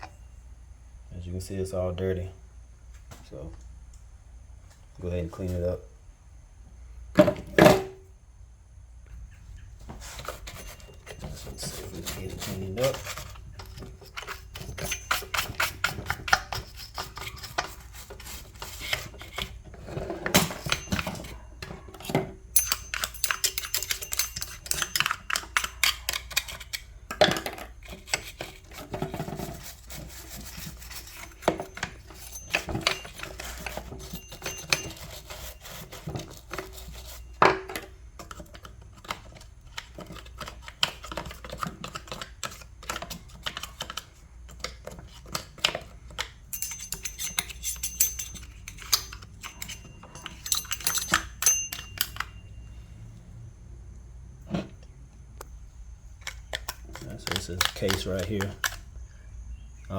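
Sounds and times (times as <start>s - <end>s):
parts clicking and knocking: 9.8s - 52.7s, 54.4s - 59.0s.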